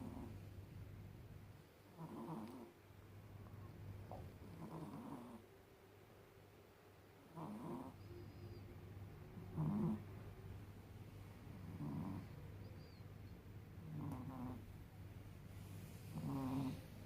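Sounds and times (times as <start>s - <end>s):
cat snoring: 0.0s - 0.3s, 1.9s - 2.7s, 4.4s - 5.4s, 7.3s - 8.5s, 9.4s - 10.1s, 11.5s - 13.0s, 13.8s - 14.7s, 16.0s - 16.9s
steady low hum: 0.0s - 17.0s.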